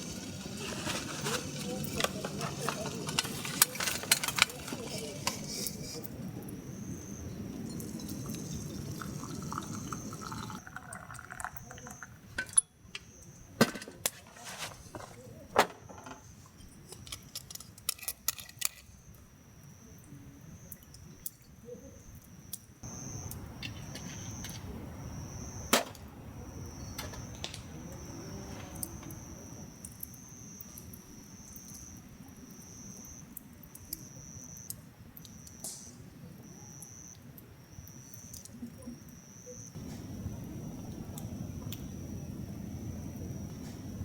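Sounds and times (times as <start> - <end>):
insects trilling: 0.0 - 13.6, 18.2 - 44.0
camp gear clicks and knocks: 0.6 - 6.0, 12.4 - 18.9, 39.8 - 40.6.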